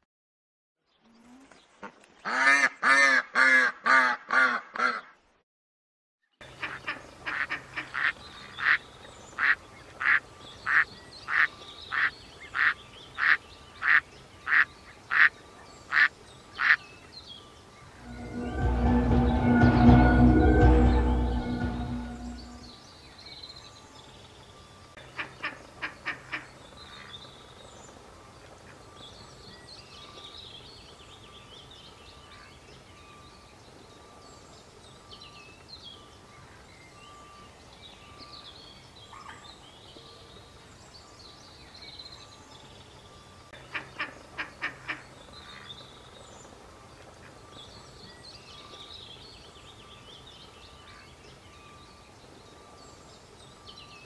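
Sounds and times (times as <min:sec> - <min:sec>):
faint pulsing tone: 0:18.0 - 0:22.7.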